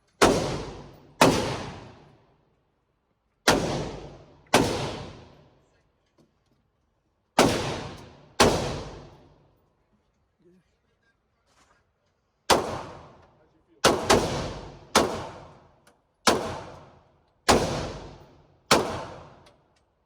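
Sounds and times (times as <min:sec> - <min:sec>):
rifle shots echoing: 0:00.2 - 0:02.1, 0:03.5 - 0:05.4, 0:07.4 - 0:09.2, 0:12.5 - 0:13.2, 0:13.8 - 0:15.6, 0:16.2 - 0:19.4.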